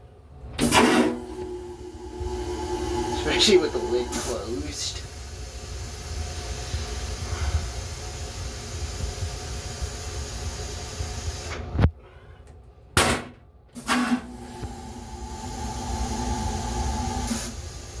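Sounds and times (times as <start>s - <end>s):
railcar rumble and hiss: 0.0s - 11.8s, 13.8s - 18.0s
low steady hum: 0.8s - 7.2s, 14.4s - 17.6s.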